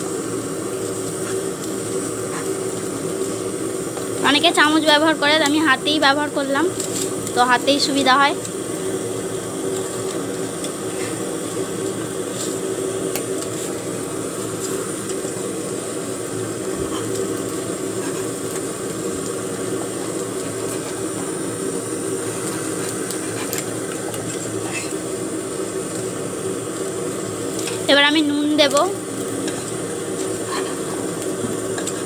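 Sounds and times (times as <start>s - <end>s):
steady mechanical hum: 0.0s - 32.0s.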